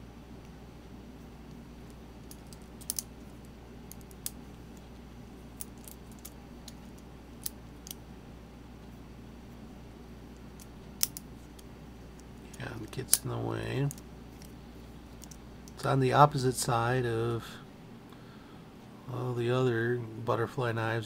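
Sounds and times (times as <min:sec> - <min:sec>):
faint low hum: 0:00.0 - 0:21.0.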